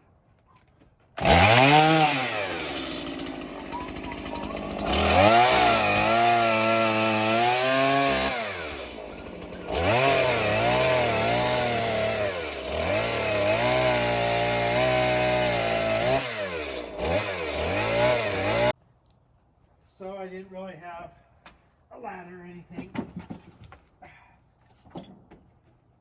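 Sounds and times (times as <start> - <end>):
chainsaw revving: 1.2 - 18.8.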